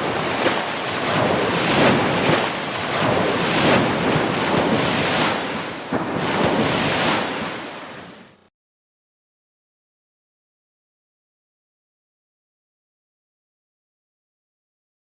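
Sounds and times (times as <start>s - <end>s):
ocean waves breaking: 0.0s - 8.5s.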